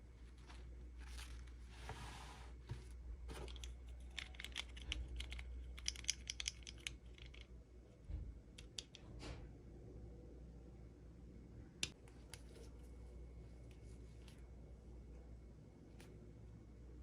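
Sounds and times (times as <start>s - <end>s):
small plastic parts clicking: 3.4s - 7.5s.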